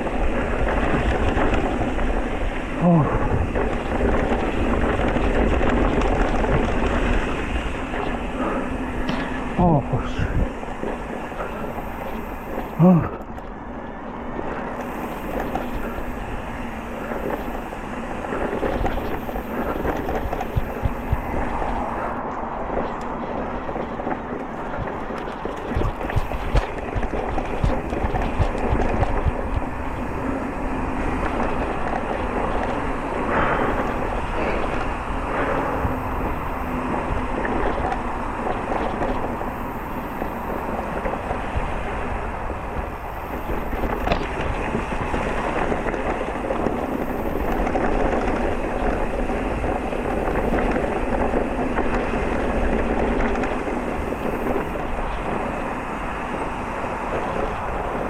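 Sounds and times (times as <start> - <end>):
bike rattling: 0.0 - 58.0
wind buffeting microphone: 0.0 - 58.0.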